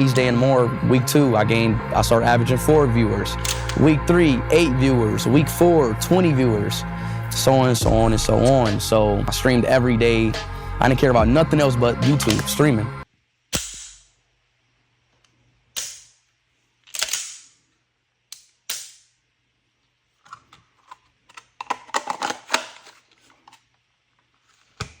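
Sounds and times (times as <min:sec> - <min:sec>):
gun handling clicks and clacks: 0:03.4 - 0:03.8, 0:16.8 - 0:17.5.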